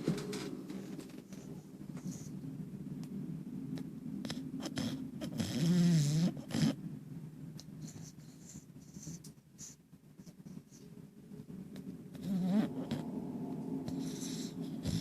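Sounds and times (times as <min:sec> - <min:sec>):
dog snoring: 0:04.2 - 0:06.8, 0:07.8 - 0:09.8, 0:12.1 - 0:13.2, 0:13.8 - 0:15.0.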